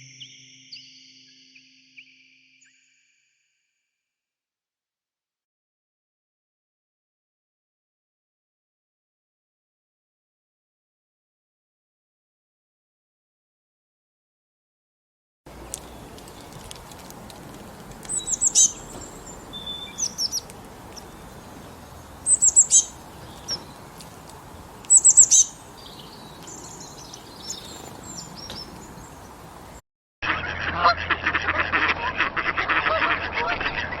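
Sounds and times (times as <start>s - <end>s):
small bird calling: 15.5s - 29.8s
chatter of many birds: 15.5s - 34.0s.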